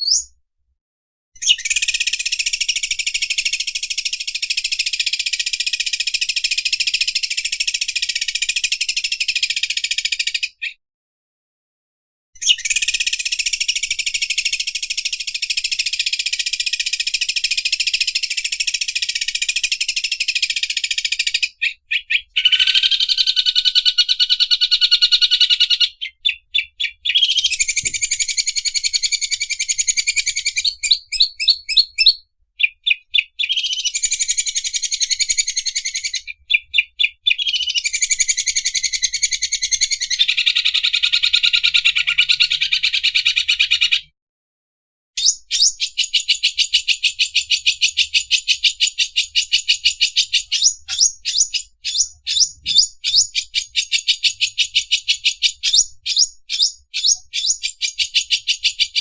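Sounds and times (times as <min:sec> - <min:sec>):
bird singing rapid notes: 0:00.0 - 0:00.4, 0:12.4 - 0:44.1, 0:45.2 - 0:59.0.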